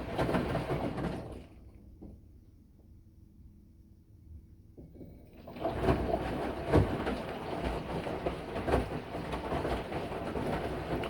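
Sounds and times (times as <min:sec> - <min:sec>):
washing machine rumbling: 0:00.0 - 0:02.3, 0:04.7 - 0:11.0.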